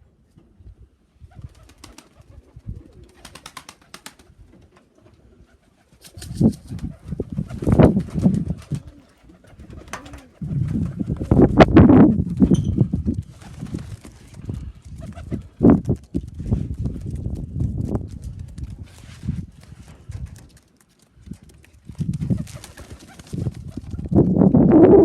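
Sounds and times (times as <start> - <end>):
pigeons cooing: 7.1 - 11.5.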